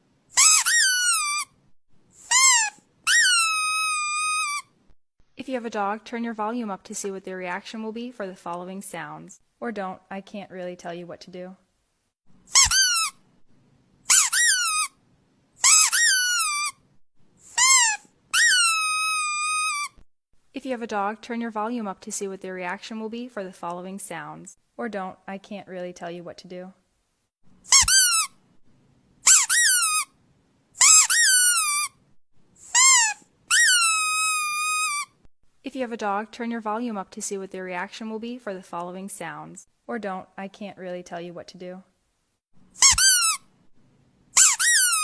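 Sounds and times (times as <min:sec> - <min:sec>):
rubber squeaky toy squeaking: 0:00.4 - 0:01.6, 0:02.2 - 0:04.8, 0:12.5 - 0:13.2, 0:14.1 - 0:15.0, 0:15.6 - 0:16.8, 0:17.4 - 0:20.0, 0:27.7 - 0:28.4, 0:29.2 - 0:30.2, 0:30.8 - 0:32.0, 0:32.6 - 0:35.2, 0:42.8 - 0:43.5, 0:44.4 - 0:45.0.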